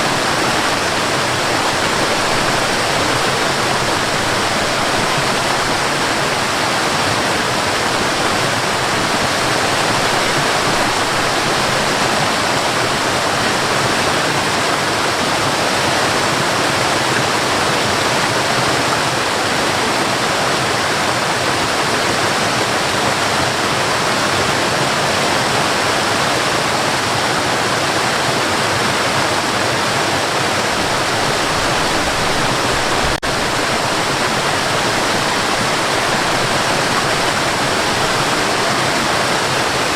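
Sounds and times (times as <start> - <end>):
waterfall pouring: 0.0 - 17.7, 30.4 - 39.9.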